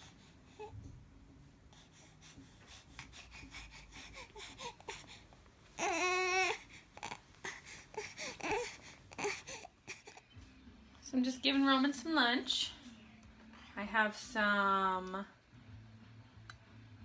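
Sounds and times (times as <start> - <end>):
baby babbling: 5.8 - 10.2.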